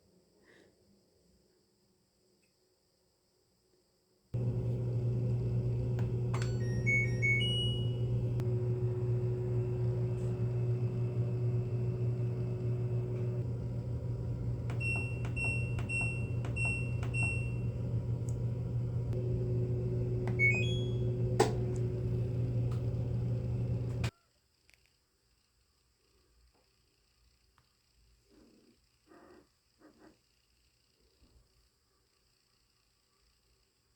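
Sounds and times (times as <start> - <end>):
appliance humming: 4.4 - 24.1
click: 4.4 - 24.1.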